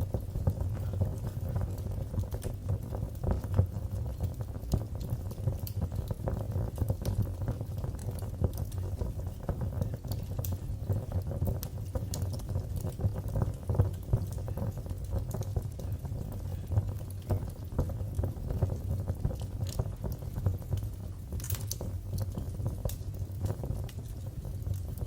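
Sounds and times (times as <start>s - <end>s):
fire crackling in a fireplace: 0.0s - 25.0s.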